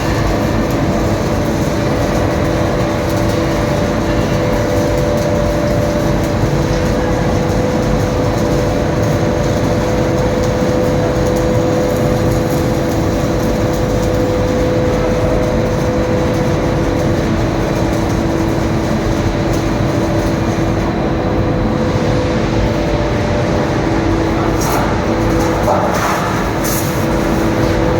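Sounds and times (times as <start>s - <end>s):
industrial machinery roar: 0.0s - 27.9s.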